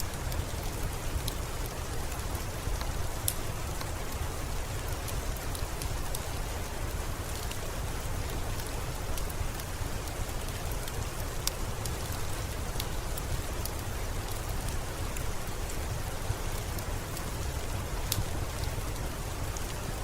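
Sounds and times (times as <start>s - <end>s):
steady rain falling: 0.0s - 20.0s
wood fire crackling: 0.0s - 20.0s.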